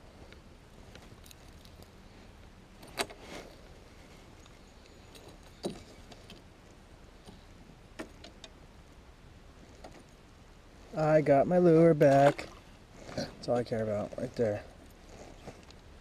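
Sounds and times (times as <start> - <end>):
low background noise: 0.0 - 16.0
fishing gear clicks and knocks: 4.3 - 6.5.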